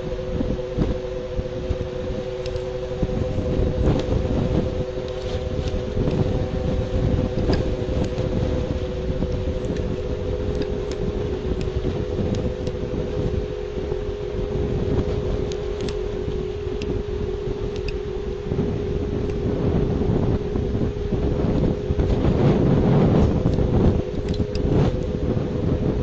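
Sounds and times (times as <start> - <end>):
dense low rumble: 0.0 - 26.0
drone of two held tones: 0.0 - 26.0
faint clicks: 9.2 - 12.8, 17.7 - 18.0, 23.2 - 25.1.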